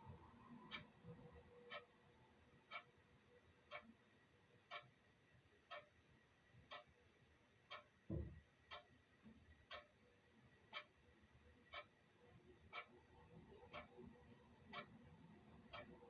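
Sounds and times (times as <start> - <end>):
clock ticking: 0.6 - 0.9, 1.6 - 1.9, 2.6 - 4.0, 4.6 - 5.0, 5.6 - 6.0, 6.6 - 7.0, 7.7 - 8.0, 8.7 - 8.9, 9.6 - 10.0, 10.7 - 11.0, 11.6 - 12.0, 12.6 - 15.0, 15.6 - 16.0
low thump: 8.1 - 8.4.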